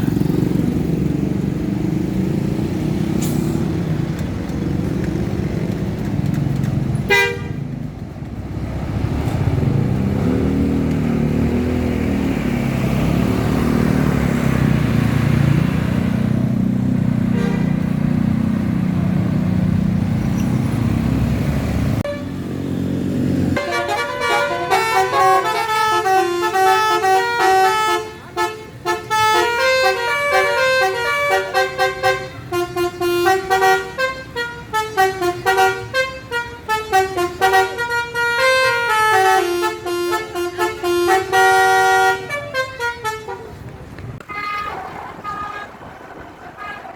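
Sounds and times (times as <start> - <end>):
bus diesel engine droning: 0.0 - 46.9
multi-tone bus horn tune: 6.8 - 7.8, 17.0 - 18.0, 22.0 - 22.4, 23.4 - 45.8.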